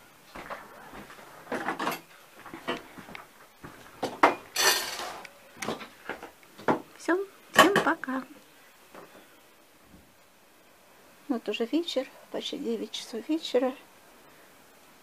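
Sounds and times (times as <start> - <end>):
dishes and cutlery clinking: 1.5 - 2.8, 4.1 - 5.8.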